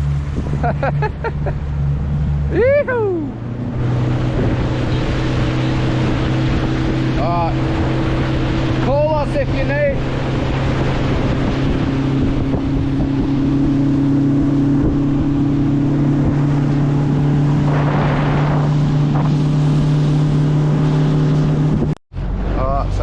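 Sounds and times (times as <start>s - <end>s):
wind noise on microphone: 0.0s - 1.3s, 2.0s - 22.6s
boat motor running: 0.0s - 23.0s.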